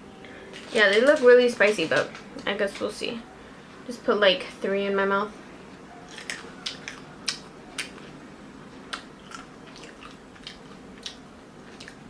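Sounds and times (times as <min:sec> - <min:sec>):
person chewing crunchy nuts: 0:06.0 - 0:08.2, 0:08.9 - 0:12.0.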